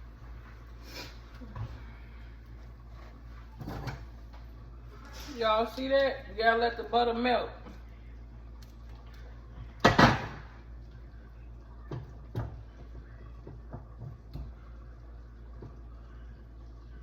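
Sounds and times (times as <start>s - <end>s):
steady low hum: 0.0s - 17.0s
loud kitchen bang: 9.8s - 10.6s.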